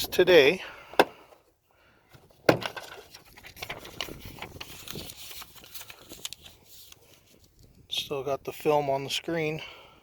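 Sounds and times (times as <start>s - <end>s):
handheld tool rustling and clicking: 2.5s - 7.7s.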